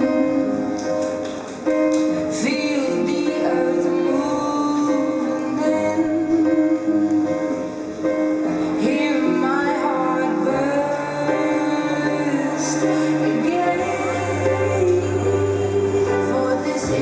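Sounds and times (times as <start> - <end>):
song with singing over guitar: 0.0 - 17.0.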